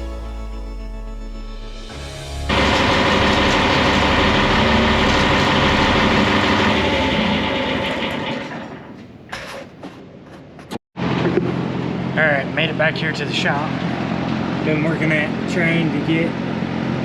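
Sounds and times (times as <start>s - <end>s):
vehicle engine running: 1.8s - 9.1s.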